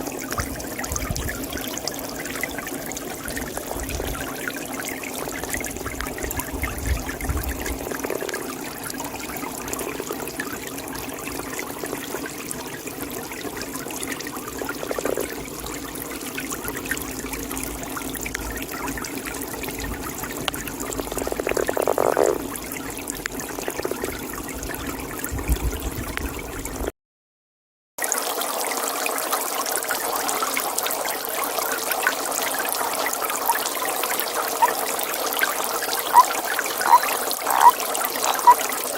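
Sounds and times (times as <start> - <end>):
water trickling: 0.0 - 26.9, 28.0 - 38.9
toad calling: 14.6 - 15.4, 20.4 - 22.5, 34.2 - 38.8.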